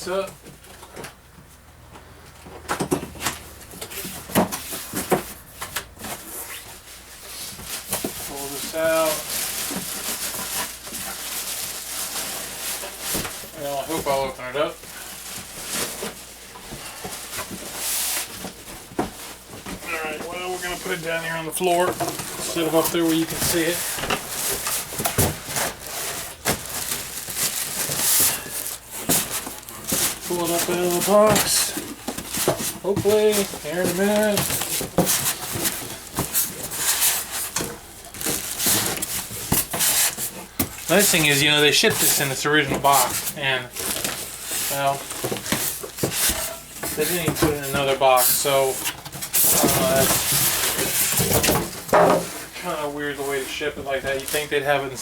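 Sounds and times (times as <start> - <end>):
cardboard flaps knocking and scraping: 2.7 - 6.7, 15.4 - 52.5
cardboard rustling: 2.9 - 55.0.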